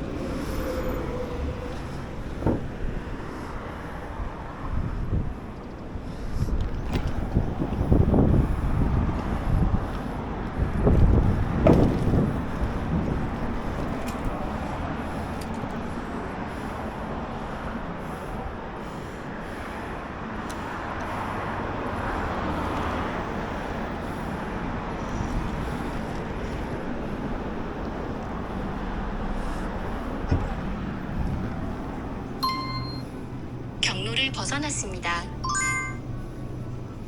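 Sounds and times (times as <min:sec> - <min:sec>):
wind noise: 0:00.0 - 0:15.7
road noise: 0:00.0 - 0:37.0.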